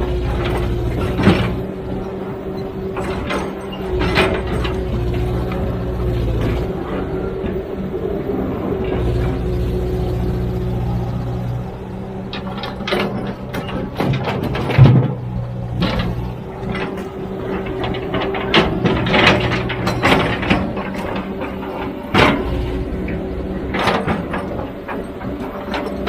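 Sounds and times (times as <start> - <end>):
diesel engine running: 0.0 - 26.0
sharp metal clanks and knocks: 0.2 - 5.8, 12.2 - 26.0.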